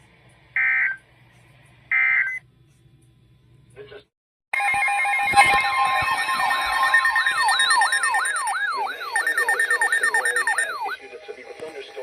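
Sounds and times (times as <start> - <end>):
sweeping siren: 4.6 - 11.0
steady alarm tones: 4.6 - 11.1.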